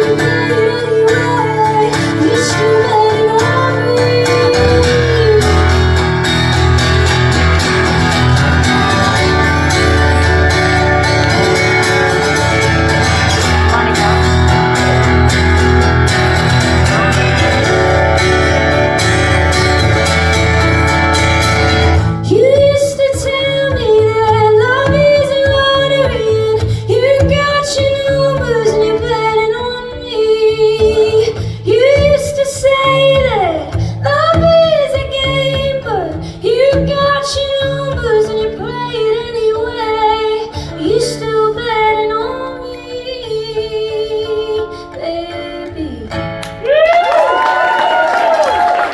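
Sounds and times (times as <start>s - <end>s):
woman singing: 0.0s - 6.2s, 22.2s - 46.4s
live band chord with guitar: 0.0s - 29.8s
sparse guitar and bass: 0.0s - 41.4s.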